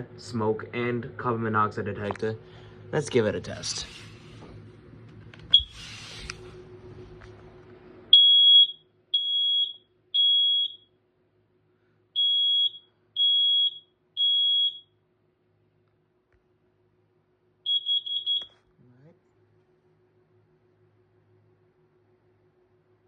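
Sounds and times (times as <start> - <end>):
loud high-pitched alarm beeps: 5.5 - 5.8, 8.1 - 10.9, 12.2 - 15.0, 17.7 - 18.6
smoke alarm chirp: 5.5 - 5.9, 8.1 - 11.0, 12.2 - 15.0, 17.6 - 18.6.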